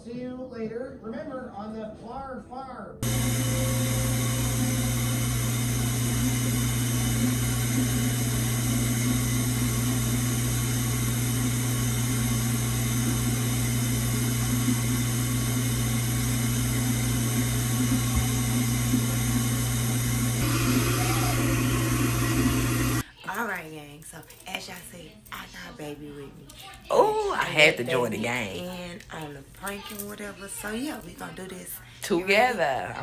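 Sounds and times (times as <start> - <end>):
garbage disposal motor drone: 3.0 - 23.0.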